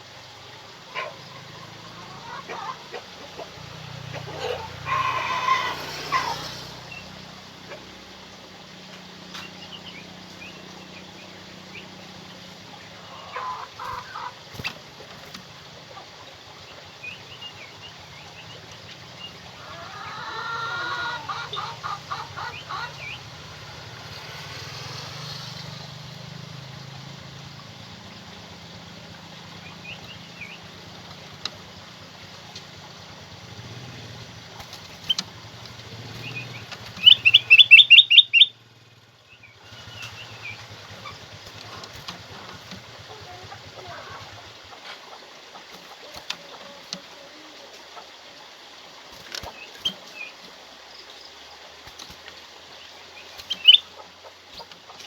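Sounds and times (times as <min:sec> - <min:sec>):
bulbul chirps and trills: 0:34.2 - 0:48.2, 0:51.9 - 0:55.0.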